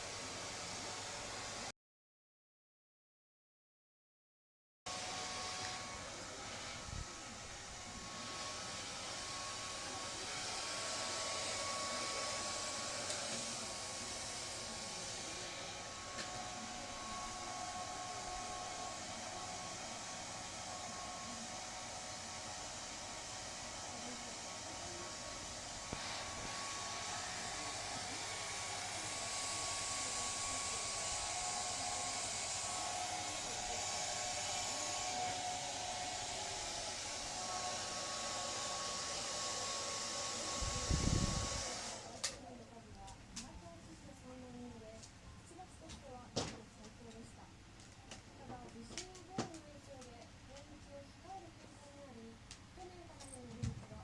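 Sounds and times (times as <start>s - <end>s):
hair dryer running: 0.0s - 1.7s, 4.9s - 42.5s.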